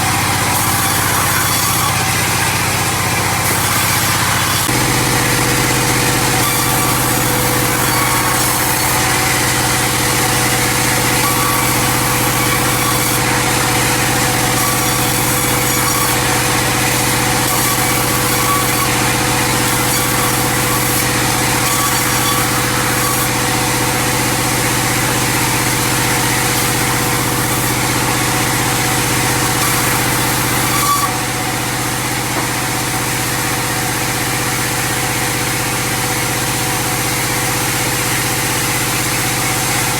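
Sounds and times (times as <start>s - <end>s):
sawmill machinery droning: 0.0s - 39.9s.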